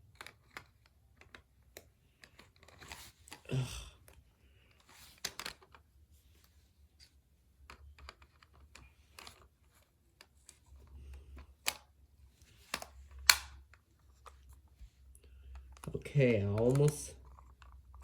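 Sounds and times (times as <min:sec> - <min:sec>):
hard plastic clicking and snapping: 0:07.6 - 0:12.0, 0:12.6 - 0:14.6, 0:15.4 - 0:18.0.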